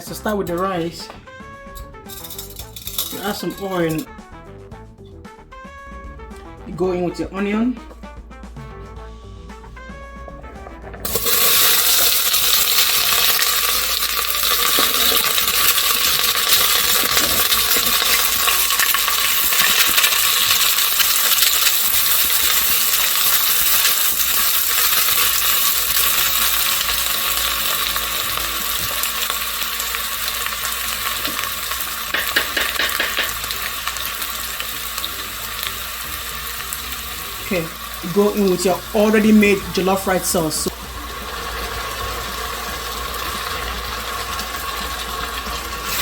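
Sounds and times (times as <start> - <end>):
onions sizzling in hot oil: 10.5 - 46.0.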